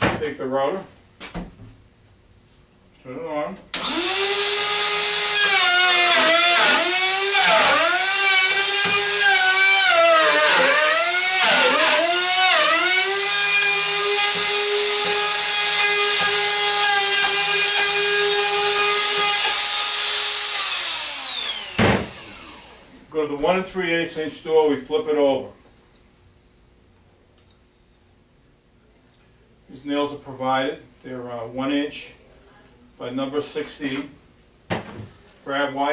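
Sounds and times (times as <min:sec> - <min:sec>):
wood router whining: 0:03.7 - 0:23.0.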